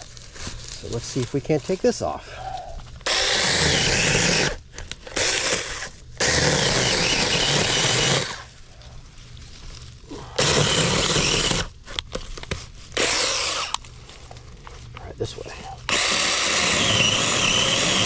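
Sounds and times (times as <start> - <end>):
mini chainsaw cutting wood: 3.0 - 8.5, 10.3 - 11.7, 13.0 - 13.8, 15.9 - 18.0.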